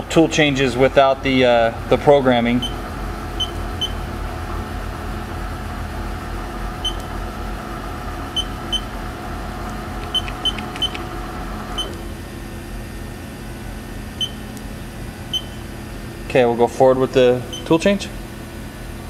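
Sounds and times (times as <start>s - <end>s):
machining center humming: 0.0s - 19.0s
short electronic keypad beeps: 10.1s - 11.0s, 14.2s - 14.4s, 15.3s - 15.6s.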